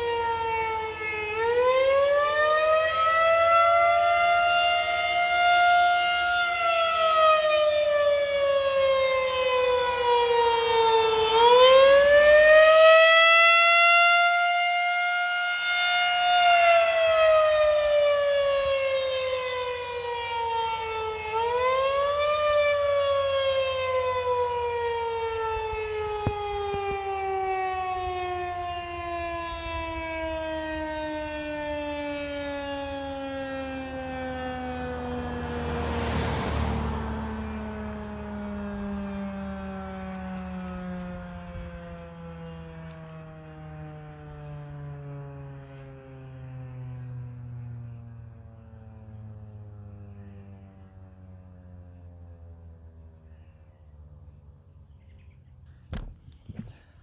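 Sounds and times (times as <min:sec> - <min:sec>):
rotating warning siren: 0:00.0 - 0:57.0.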